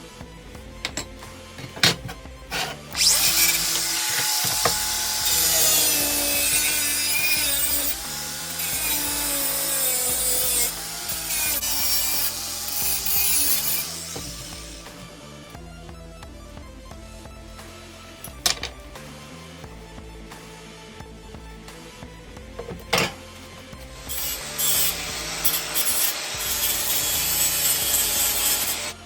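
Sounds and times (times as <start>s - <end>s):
power tool cutting sheet metal: 0.9s - 15.4s, 24.0s - 29.0s.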